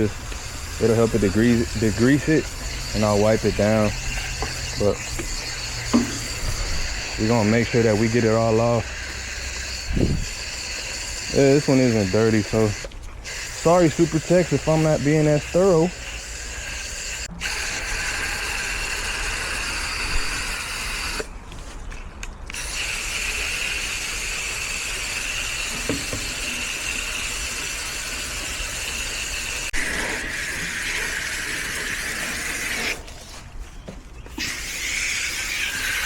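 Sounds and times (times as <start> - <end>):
hose nozzle spraying water: 0.0 - 21.7, 22.5 - 33.4, 34.3 - 36.0.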